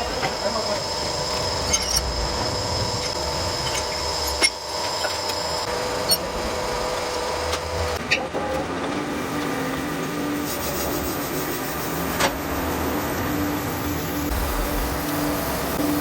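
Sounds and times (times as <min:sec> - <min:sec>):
machine whining: 0:00.0 - 0:16.0.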